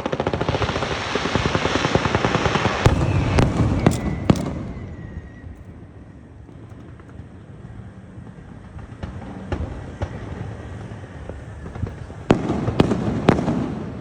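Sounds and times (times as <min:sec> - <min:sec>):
fireworks bangs: 0:00.0 - 0:14.0
fireworks crackling: 0:00.0 - 0:14.0
thin firework whistle: 0:02.6 - 0:06.4.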